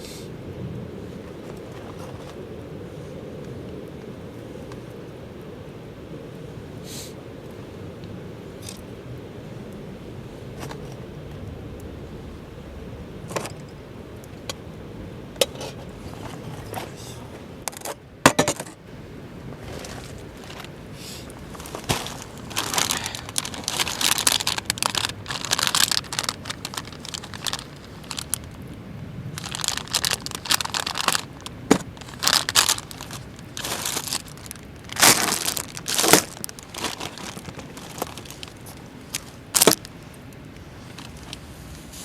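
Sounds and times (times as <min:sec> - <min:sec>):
crinkling and rustling: 0:01.2 - 0:02.5, 0:10.6 - 0:11.0, 0:13.2 - 0:13.7, 0:15.4 - 0:18.8, 0:19.4 - 0:42.0.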